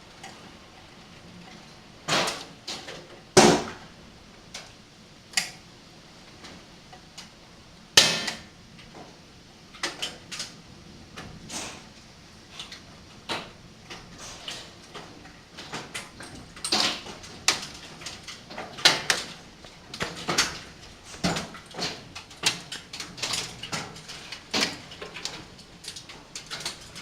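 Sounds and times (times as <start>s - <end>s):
hailstones striking window: 12.4s - 27.0s.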